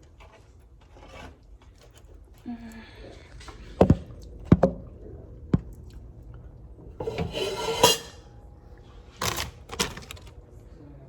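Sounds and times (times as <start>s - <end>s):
scoop scraping pan: 7.0s - 8.3s.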